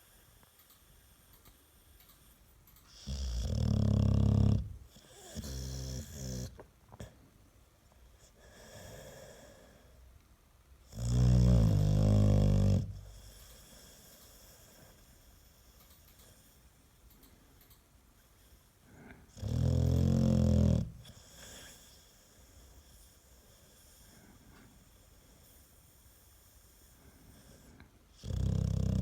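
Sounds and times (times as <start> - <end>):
dog snoring: 2.9 - 7.1, 10.9 - 16.5, 18.9 - 29.0.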